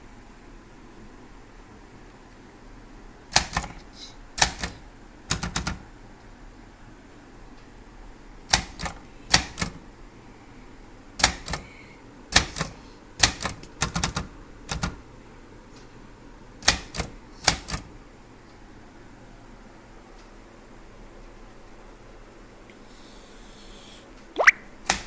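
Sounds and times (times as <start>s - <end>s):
typewriter key strikes: 3.3s - 3.8s, 4.4s - 5.8s, 8.5s - 9.8s, 11.2s - 11.7s, 12.4s - 15.0s, 16.6s - 17.9s.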